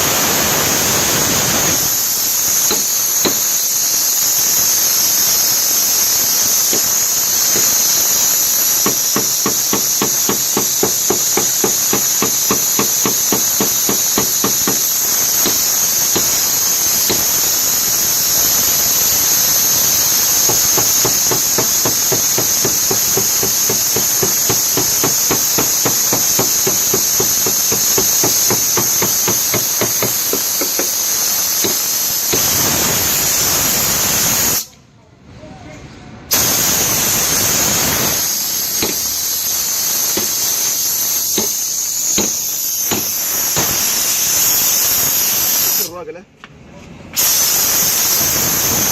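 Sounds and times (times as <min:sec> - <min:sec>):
steady high hiss: 0:00.0 - 0:34.8, 0:36.3 - 0:46.2, 0:47.2 - 0:48.9
hammer on sheet metal: 0:02.6 - 0:03.6, 0:06.6 - 0:17.4, 0:20.0 - 0:32.6, 0:38.8 - 0:39.1, 0:40.1 - 0:40.5, 0:41.3 - 0:43.8.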